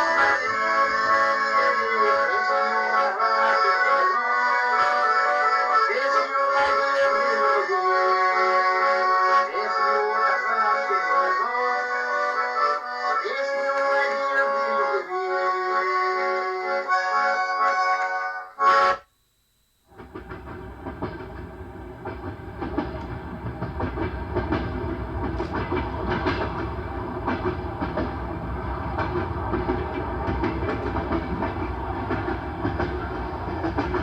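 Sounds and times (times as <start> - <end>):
accordion music: 0.0 - 19.1
train wheels clattering on rails: 20.0 - 34.0.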